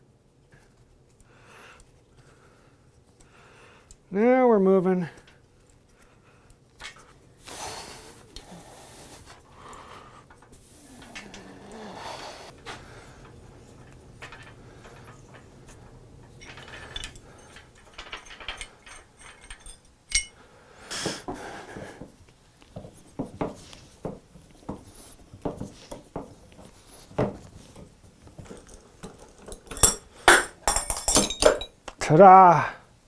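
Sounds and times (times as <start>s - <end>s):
metal tools clinking and knocking: 12.6s - 20.4s, 27.3s - 31.8s.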